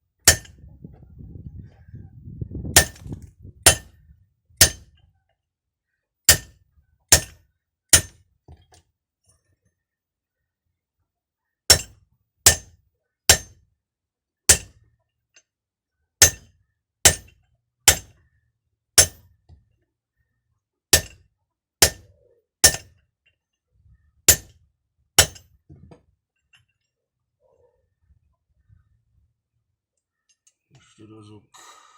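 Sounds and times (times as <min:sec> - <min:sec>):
hammer striking metal: 0:00.3 - 0:00.5, 0:03.7 - 0:03.9, 0:04.6 - 0:04.8, 0:06.3 - 0:06.5, 0:07.1 - 0:07.4, 0:08.0 - 0:08.2, 0:11.7 - 0:12.7, 0:13.3 - 0:13.6, 0:14.5 - 0:14.7, 0:16.2 - 0:16.5, 0:17.1 - 0:17.3, 0:17.9 - 0:18.1, 0:19.0 - 0:19.2, 0:21.0 - 0:21.2, 0:22.6 - 0:22.9, 0:25.2 - 0:25.4.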